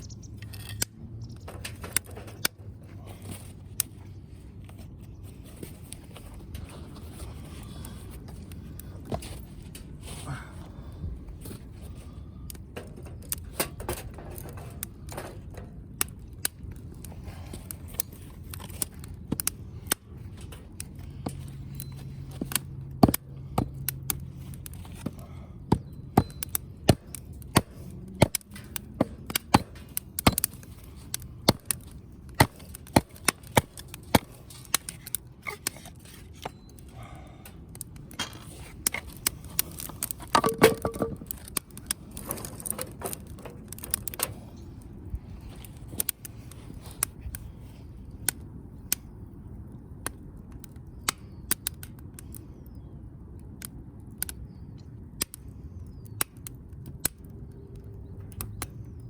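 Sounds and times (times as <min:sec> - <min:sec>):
wood fire crackling: 0:00.0 - 0:59.0
fire pops and snaps: 0:12.0 - 0:49.2, 0:50.0 - 0:59.0.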